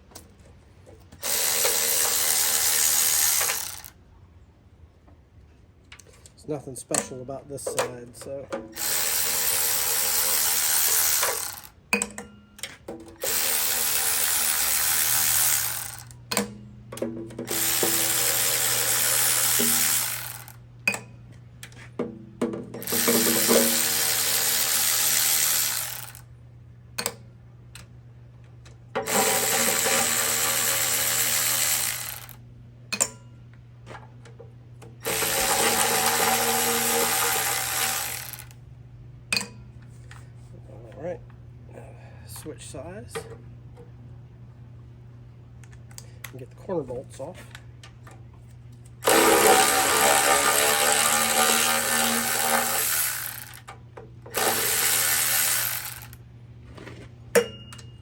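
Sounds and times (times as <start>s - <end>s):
power tool spinning bolts: 1.2s - 4.0s, 8.8s - 11.8s, 13.2s - 16.5s, 17.5s - 20.6s, 22.8s - 26.2s, 29.0s - 32.4s, 35.0s - 38.6s, 49.0s - 53.7s, 54.3s - 56.2s.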